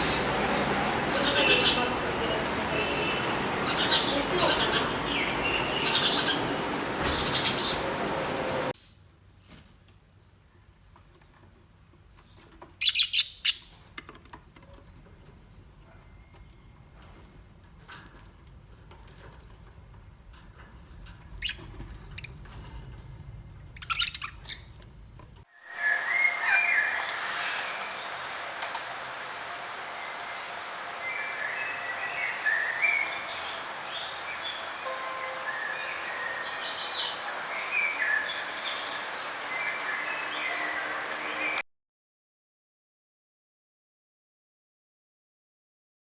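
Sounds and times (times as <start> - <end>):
birds chirping: 0.0 - 25.4, 31.0 - 34.9, 35.5 - 41.6.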